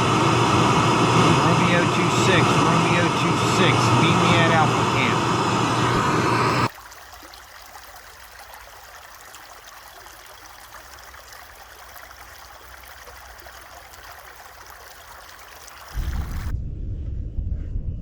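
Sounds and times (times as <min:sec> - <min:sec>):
running water hiss: 0:06.6 - 0:16.5
loud low rumble: 0:16.0 - 0:18.0.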